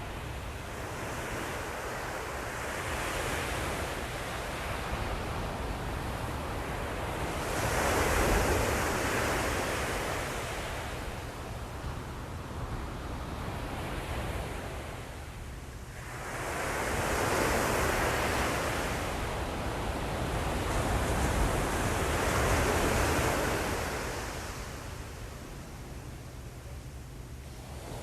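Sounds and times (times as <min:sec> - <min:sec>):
ocean wave breaking and washing: 0:15.9 - 0:25.8.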